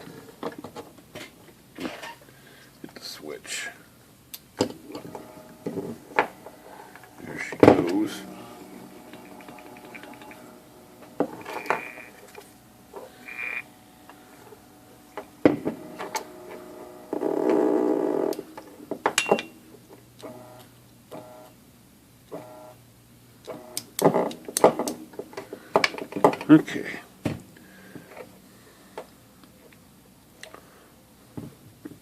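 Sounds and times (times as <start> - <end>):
mechanical whirring bursts: 4.8 - 18.9
typewriter motor humming: 4.8 - 18.9.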